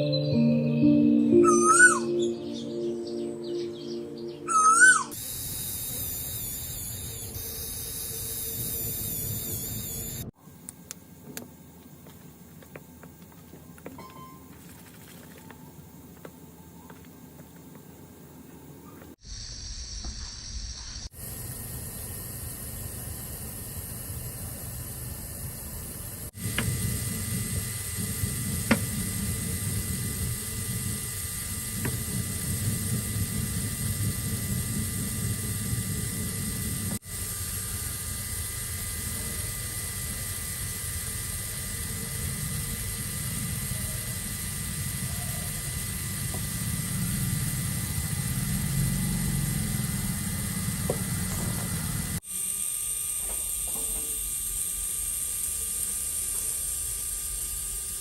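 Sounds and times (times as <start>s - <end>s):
small motor whining: 4.5s - 10.4s, 19.1s - 58.0s.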